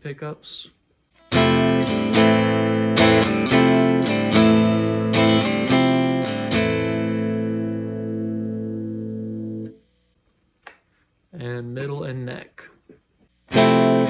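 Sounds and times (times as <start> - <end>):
electric guitar strummed chords: 1.2 - 9.8, 13.5 - 14.0.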